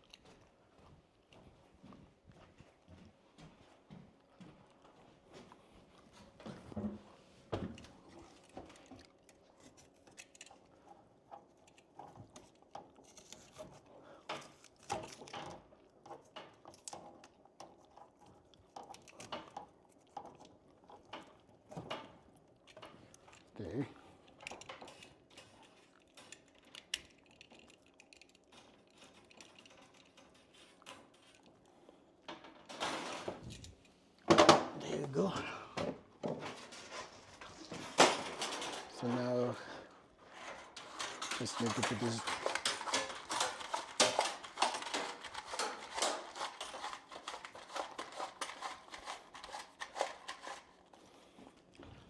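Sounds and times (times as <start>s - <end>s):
cable rustling and scraping: 5.3s - 34.2s, 36.0s - 52.0s
cable scraping: 40.2s - 50.9s.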